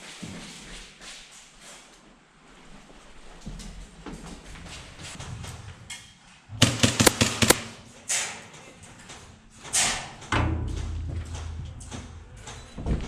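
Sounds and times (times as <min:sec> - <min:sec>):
sharp clicks and knocks: 0:06.6 - 0:07.8
low rumble: 0:10.4 - 0:13.0.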